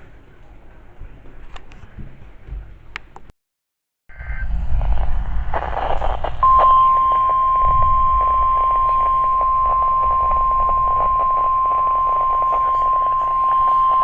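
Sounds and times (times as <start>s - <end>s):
radio hiss and static: 4.1s - 14.0s
steady high-pitched alarm beep: 6.4s - 14.0s.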